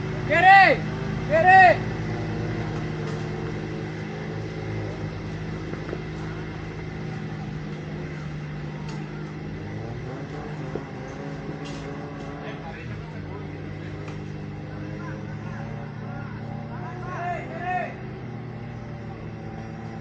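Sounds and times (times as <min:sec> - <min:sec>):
off-road vehicle engine running: 0:00.0 - 0:20.0.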